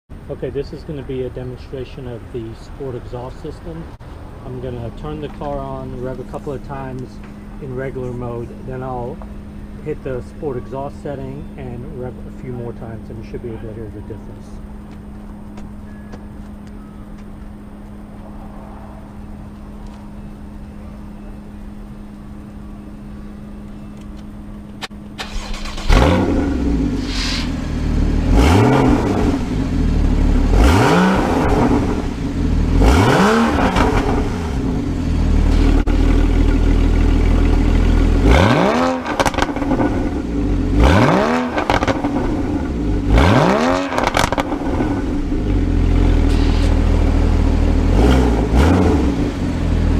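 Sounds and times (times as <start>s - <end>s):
car engine starting and idling: 0.2s - 49.9s
low hum: 3.8s - 43.3s
engine revving: 25.2s - 49.9s.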